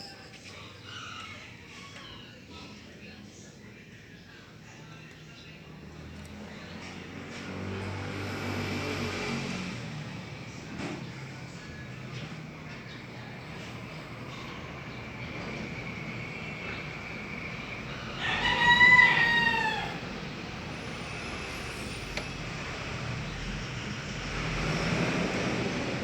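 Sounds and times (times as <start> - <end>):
steady background hum: 0.0 - 26.0
broad swell of noise: 7.1 - 10.7.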